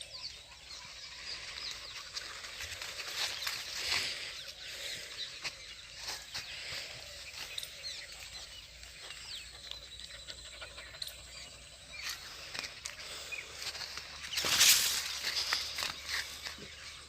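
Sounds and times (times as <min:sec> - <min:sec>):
small birds chirping: 0:00.0 - 0:17.0
rustle: 0:00.7 - 0:04.6, 0:10.9 - 0:17.0.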